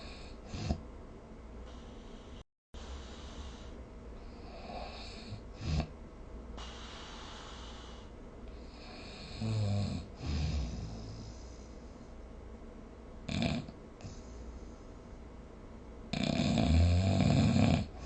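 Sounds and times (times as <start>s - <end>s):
loud low snores: 0.0s - 0.8s, 1.7s - 5.9s, 6.6s - 11.5s, 13.3s - 14.2s, 16.1s - 18.0s
hissy breathing: 1.6s - 5.9s, 6.5s - 9.5s, 10.1s - 12.2s.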